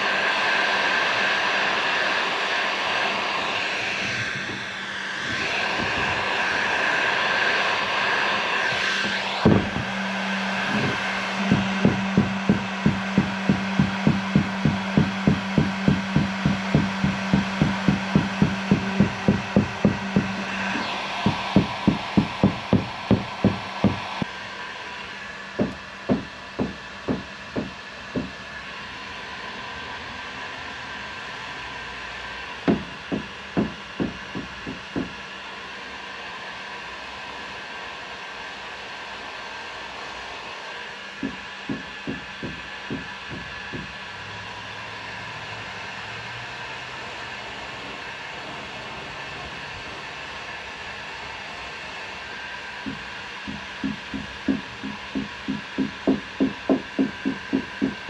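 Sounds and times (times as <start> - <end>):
heat gun blowing: 0.0 - 58.0
knocking on hard plastic: 9.4 - 9.9, 10.7 - 20.5, 21.2 - 24.1, 25.6 - 28.4, 32.7 - 35.2, 41.2 - 44.0, 52.8 - 58.0.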